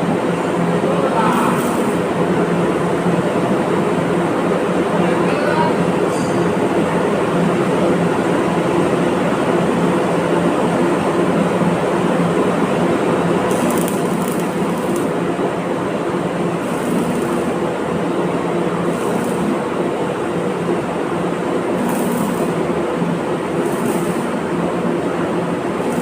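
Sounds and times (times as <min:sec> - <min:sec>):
low electrical hum: 0:00.0 - 0:26.0
arc welding crackling buzz: 0:01.2 - 0:02.1, 0:13.2 - 0:15.4, 0:16.3 - 0:20.8, 0:21.6 - 0:26.0.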